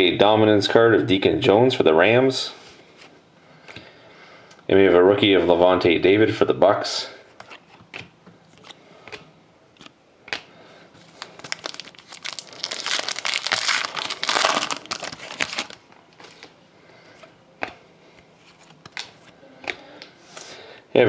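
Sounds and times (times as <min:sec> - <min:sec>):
foil wrapper crinkling and tearing: 0:11.1 - 0:16.5
cards clicking and rustling: 0:18.4 - 0:20.5.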